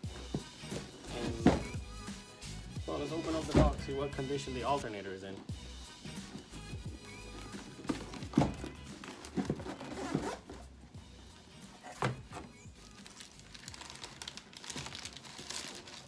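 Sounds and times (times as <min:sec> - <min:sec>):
background music: 0:00.0 - 0:16.0
cardboard box knocks and thumps: 0:00.1 - 0:01.8, 0:07.8 - 0:10.6
packaging crinkling and tearing: 0:12.8 - 0:16.0.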